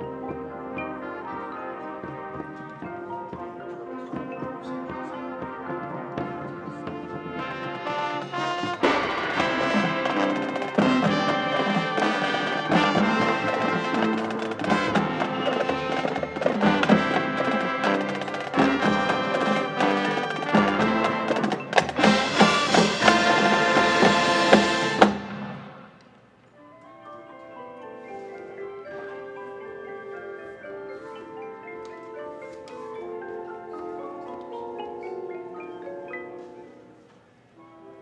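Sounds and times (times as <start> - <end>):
marching band playing: 0.0 - 26.1.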